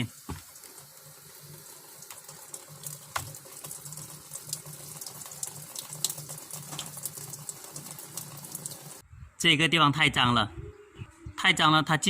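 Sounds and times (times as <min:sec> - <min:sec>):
water running into washing machine: 0:00.0 - 0:09.0.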